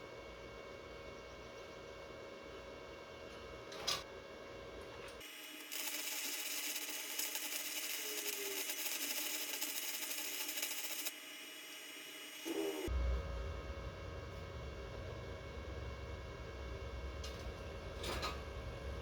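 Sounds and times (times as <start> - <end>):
welder arc crackling and hissing: 4.7 - 19.0.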